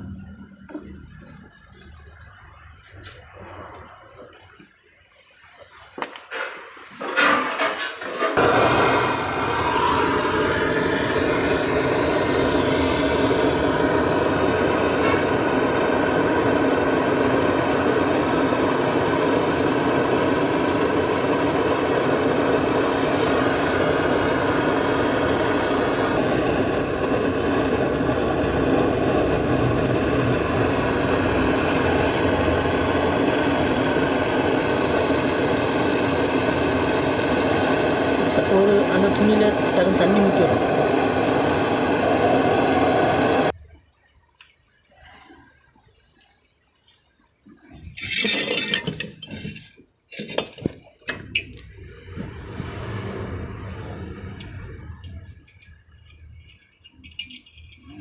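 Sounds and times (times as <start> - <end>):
torch flame roaring: 7.2 - 43.6, 51.2 - 56.5.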